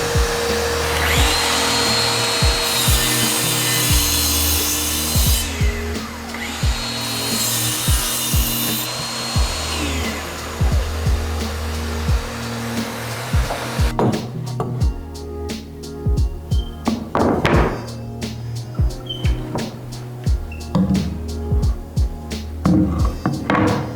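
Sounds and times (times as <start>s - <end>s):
power tool motor whining: 0.0s - 14.0s
background music with beat: 0.0s - 23.9s.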